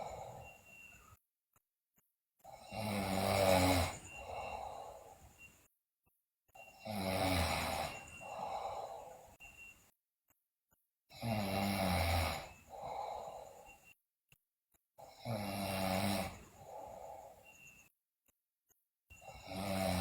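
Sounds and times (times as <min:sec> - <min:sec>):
girl snoring loudly: 0:02.5 - 0:05.2, 0:06.8 - 0:09.1, 0:11.1 - 0:13.6, 0:15.0 - 0:17.4, 0:19.2 - 0:20.0.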